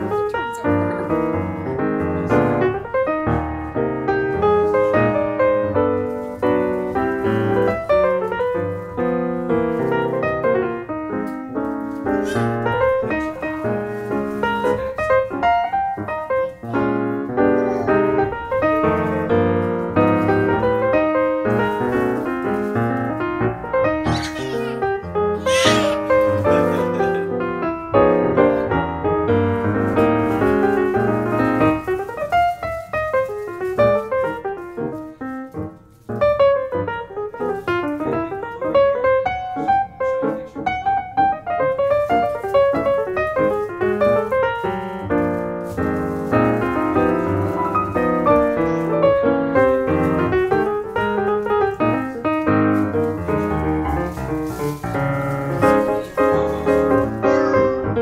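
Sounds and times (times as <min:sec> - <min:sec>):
piano music: 0:00.0 - 0:58.0.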